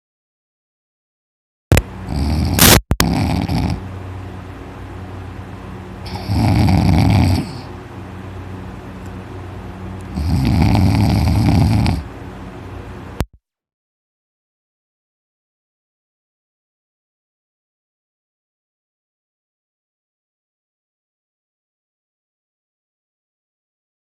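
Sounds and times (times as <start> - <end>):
man snoring loudly: 2.1 - 3.8, 6.0 - 7.7, 10.1 - 12.1.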